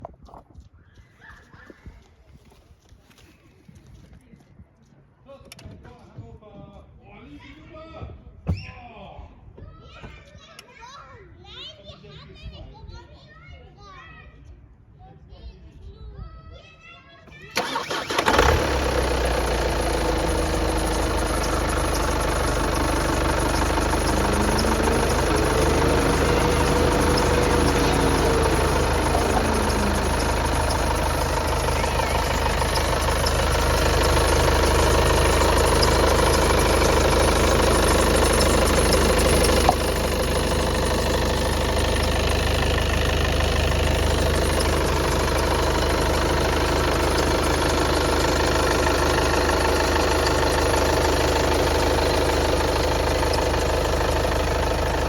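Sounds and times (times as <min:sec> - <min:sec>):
diesel engine idling: 0:17.5 - 0:55.0.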